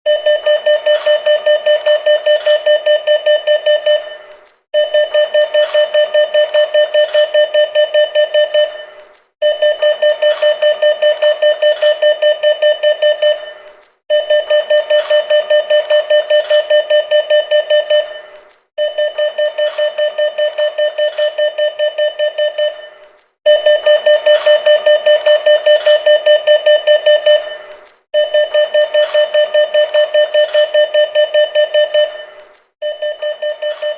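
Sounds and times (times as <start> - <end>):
cash machine warning beeps: 0.1 - 33.9.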